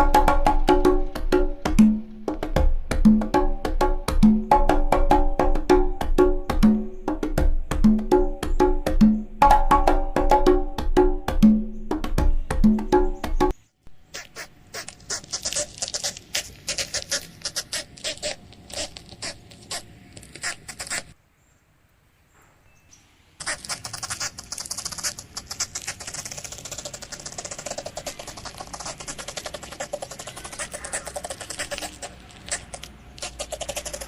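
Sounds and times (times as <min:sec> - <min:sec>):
spider scratching and ticking: 0:14.1 - 0:21.2, 0:23.4 - 0:34.0.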